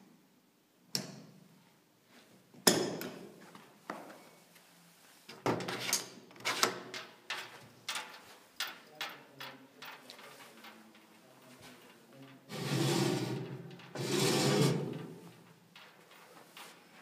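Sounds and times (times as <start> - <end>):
metal cabinet doors and drawers: 12.5 - 15.2.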